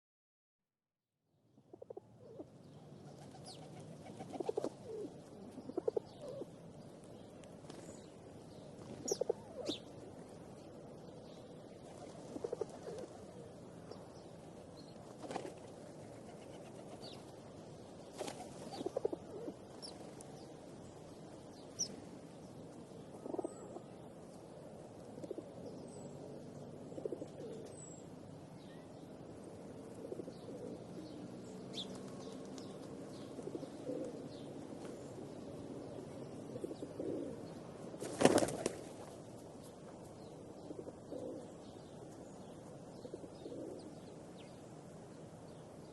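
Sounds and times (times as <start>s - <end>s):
wings flapping: 3.1s - 4.8s, 15.0s - 17.3s, 18.1s - 19.2s, 37.9s - 39.2s
pigeons cooing: 3.1s - 6.5s, 9.0s - 9.8s, 12.0s - 13.6s, 18.4s - 20.0s, 23.1s - 23.9s, 29.8s - 31.1s, 33.1s - 34.4s, 36.4s - 38.7s, 40.6s - 41.6s, 43.0s - 44.0s.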